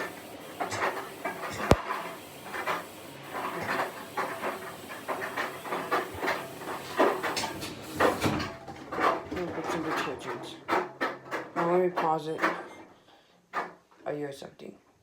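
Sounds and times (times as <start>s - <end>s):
washing machine water splashing: 0.0s - 8.3s.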